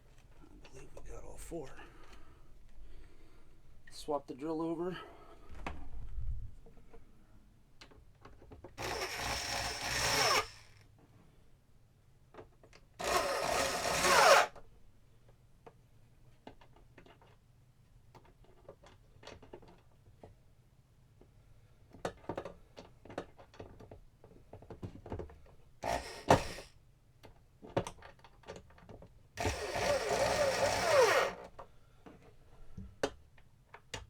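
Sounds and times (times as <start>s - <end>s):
cordless drill driving screws: 8.8s - 10.8s, 13.0s - 14.6s, 25.8s - 26.7s, 29.4s - 31.5s.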